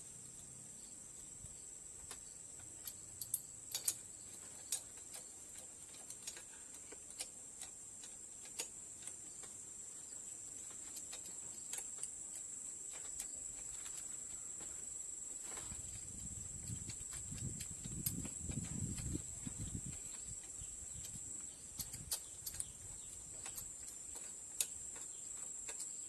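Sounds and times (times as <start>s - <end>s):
light clicks and ticks: 2.0s - 9.8s, 15.5s - 26.0s.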